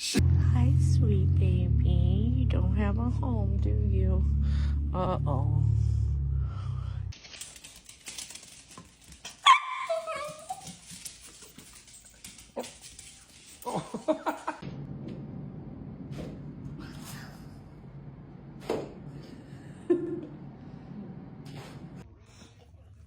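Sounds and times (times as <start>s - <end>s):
dog whining: 9.4s - 11.0s
dog whimpering: 9.5s - 10.9s.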